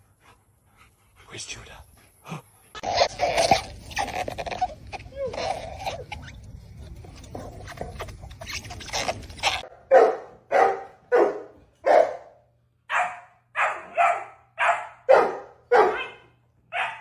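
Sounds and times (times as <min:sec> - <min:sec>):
dog barking: 0:09.8 - 0:17.0.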